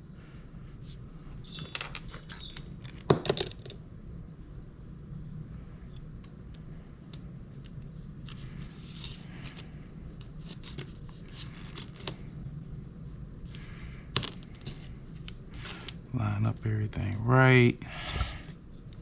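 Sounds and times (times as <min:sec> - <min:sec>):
steady low hum: 0:00.0 - 0:19.0
small parts clicking and rustling: 0:06.5 - 0:12.3.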